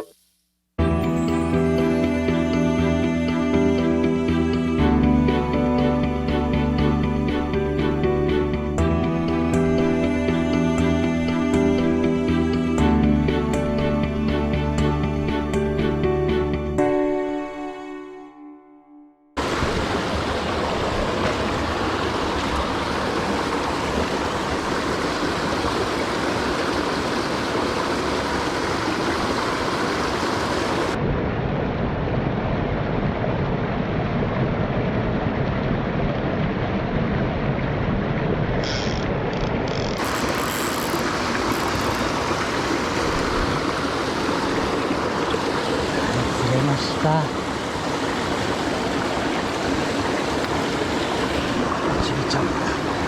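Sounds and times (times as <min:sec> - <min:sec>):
stream rushing over rocks: 0:19.4 - 0:31.0, 0:40.0 - 0:53.0.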